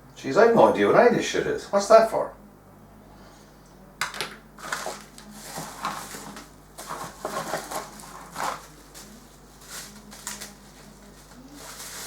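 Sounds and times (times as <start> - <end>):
packaging rustling: 4.6 - 12.0.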